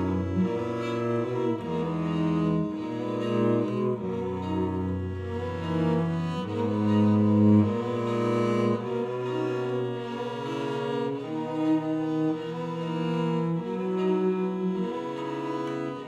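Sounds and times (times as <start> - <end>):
slow bowed string music: 0.0 - 16.0.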